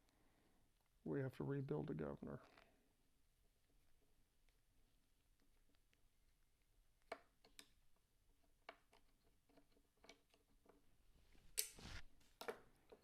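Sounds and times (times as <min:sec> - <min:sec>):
faint clicks and taps of a tool: 0:07.0 - 0:07.8, 0:08.4 - 0:10.8.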